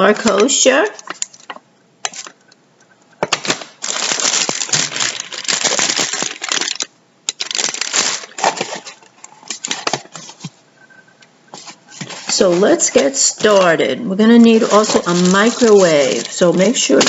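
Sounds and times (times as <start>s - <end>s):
plastic packaging crinkling: 3.2s - 10.6s, 11.9s - 13.8s, 14.4s - 17.0s.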